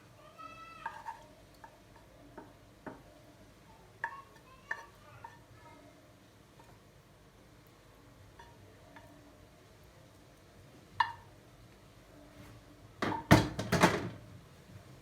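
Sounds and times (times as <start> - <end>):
dishes clattering: 13.0 - 14.2.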